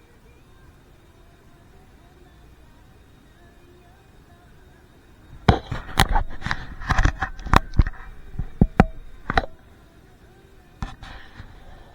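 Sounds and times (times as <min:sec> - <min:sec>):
sharp knocks and clatters: 0:05.4 - 0:09.6.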